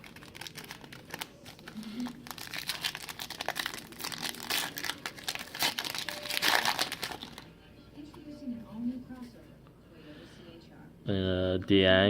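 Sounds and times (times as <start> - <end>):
foil wrapper crinkling: 0.0 - 7.5.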